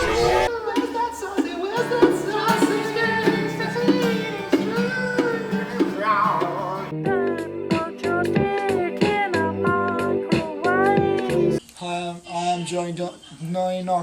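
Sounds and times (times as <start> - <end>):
sustained low notes: 0.0 - 0.5
singing voice: 0.0 - 14.0.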